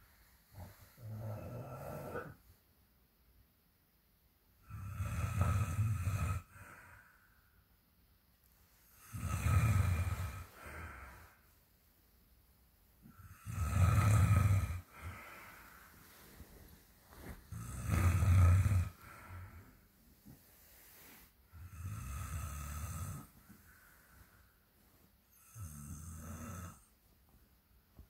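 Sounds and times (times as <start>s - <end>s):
loud deep snoring: 0.6s - 2.4s, 4.6s - 6.6s, 9.0s - 11.0s, 13.1s - 15.4s, 17.5s - 19.6s, 21.6s - 23.3s, 25.4s - 26.9s.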